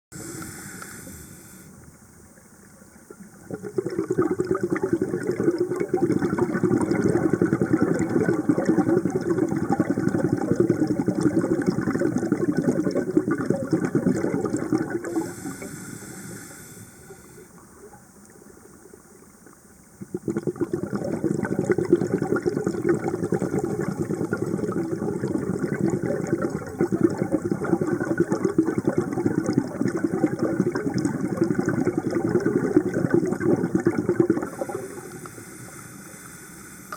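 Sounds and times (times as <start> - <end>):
high regulator hiss: 0.2 - 1.8, 15.1 - 17.6, 34.5 - 36.9
bubbling exhaled air underwater: 3.1 - 18.1, 19.9 - 36.9.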